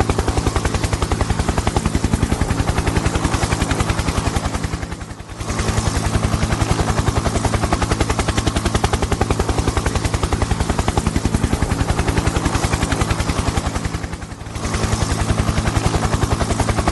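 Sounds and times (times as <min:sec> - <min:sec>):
helicopter rotor chop: 0:00.0 - 0:16.9.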